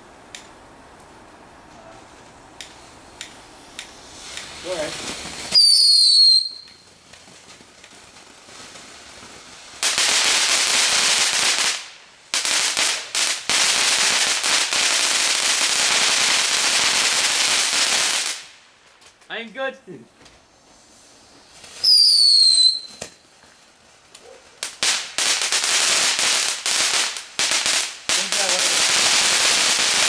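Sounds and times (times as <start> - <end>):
firework fountain hissing: 1.8 - 18.8, 20.4 - 30.0
firework whistle: 4.1 - 6.9, 21.6 - 23.2.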